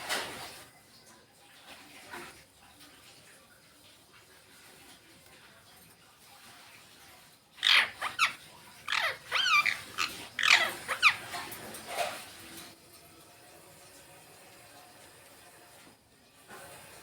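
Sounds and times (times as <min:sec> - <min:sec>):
parakeet squawking and chirping: 0:07.6 - 0:12.1.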